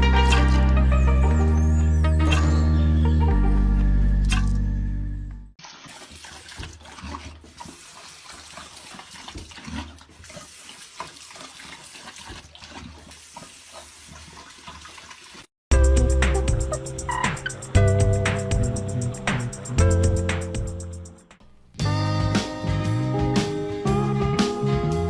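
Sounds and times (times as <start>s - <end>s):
music: 0.0s - 5.6s, 15.7s - 25.0s
small splashes and knocks: 5.6s - 15.5s.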